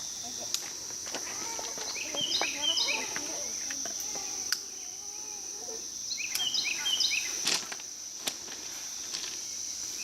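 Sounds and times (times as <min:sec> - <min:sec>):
crickets trilling: 0:00.0 - 0:10.0
bird calling: 0:01.2 - 0:07.4.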